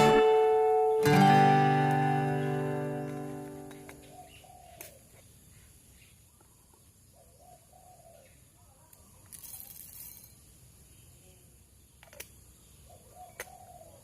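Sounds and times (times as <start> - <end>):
bird cooing calls: 3.9 - 5.1, 7.2 - 8.4, 12.9 - 14.0.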